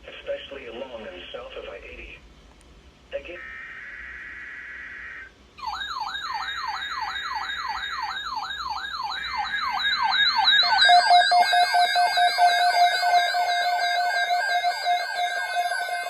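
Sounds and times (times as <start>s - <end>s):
electronic siren yelp: 3.2s - 16.0s
steady electronic tone: 3.2s - 16.0s
pulsing tone: 3.4s - 16.0s.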